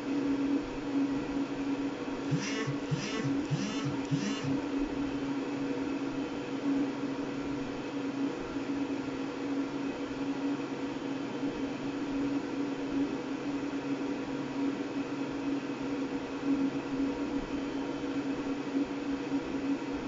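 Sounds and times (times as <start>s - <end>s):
washing machine running: 2.3s - 4.7s.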